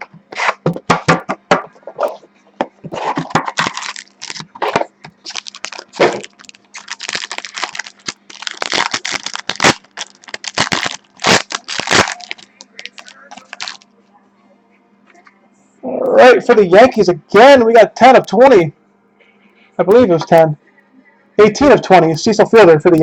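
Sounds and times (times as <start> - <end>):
plastic wrapping crinkling and tearing: 2.9 - 13.9.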